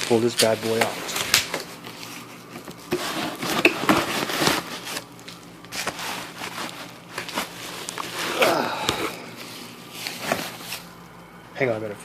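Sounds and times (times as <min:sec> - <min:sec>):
packaging rustling and crinkling: 0:00.0 - 0:11.0.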